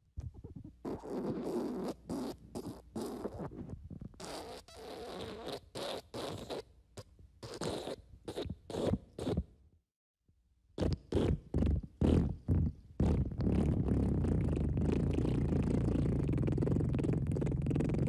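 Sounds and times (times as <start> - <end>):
raspy farts: 0.4 - 6.7, 10.8 - 18.0.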